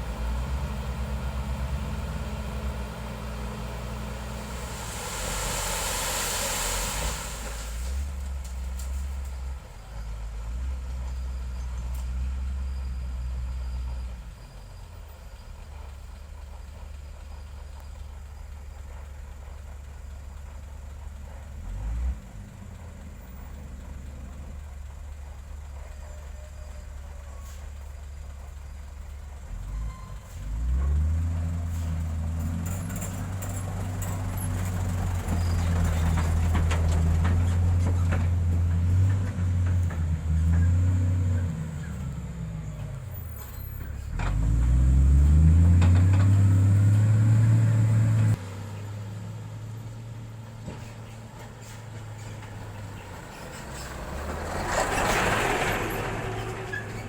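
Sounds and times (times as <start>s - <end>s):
heavy diesel engine revving: 0.0s - 8.3s, 29.5s - 48.4s, 51.7s - 57.0s.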